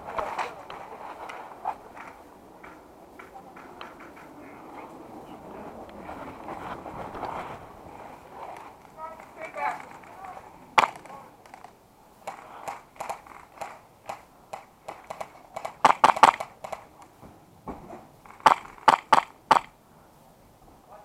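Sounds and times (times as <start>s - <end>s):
sharp cracks and clicks: 8.6s - 17.1s, 18.3s - 19.7s.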